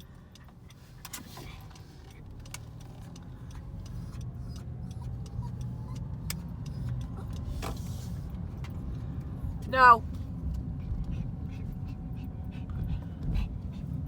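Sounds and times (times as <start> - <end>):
light clicks and rattles: 0.0 - 9.3
car road noise rumble: 0.0 - 14.0.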